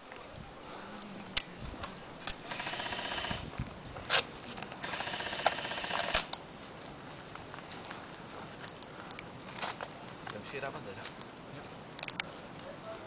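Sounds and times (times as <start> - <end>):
airsoft rifle full-auto bursts: 2.4 - 3.4, 4.8 - 6.3.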